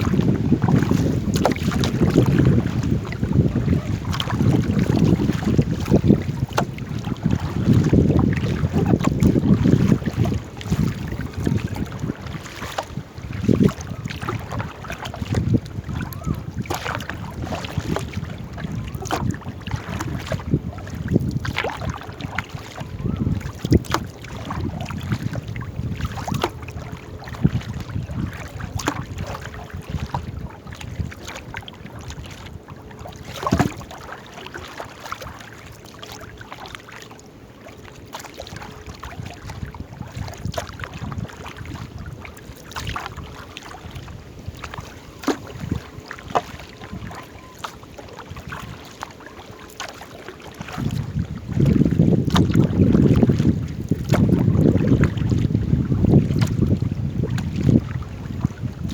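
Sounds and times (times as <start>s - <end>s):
paddles knocking against hull: 0.0s - 32.3s, 33.0s - 36.1s, 38.1s - 58.9s
wind rumbling on microphone: 0.0s - 36.8s, 38.3s - 58.9s.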